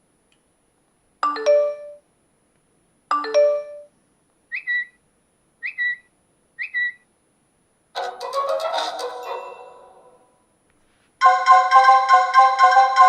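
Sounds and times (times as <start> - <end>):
two-note bell chime: 8.0 - 10.4.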